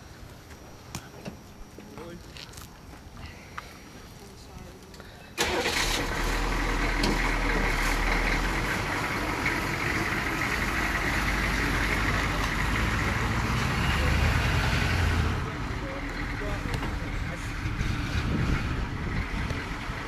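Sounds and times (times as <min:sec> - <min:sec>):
engine running with low rumble: 0:05.4 - 0:20.0.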